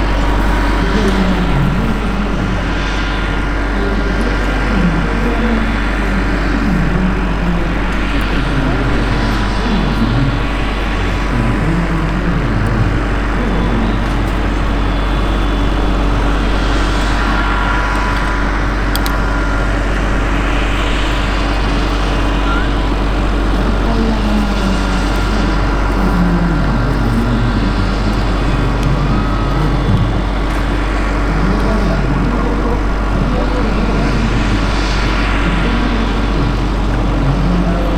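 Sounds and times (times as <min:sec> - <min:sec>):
low rumble: 0:00.0 - 0:37.9
model helicopter whine: 0:00.0 - 0:37.9.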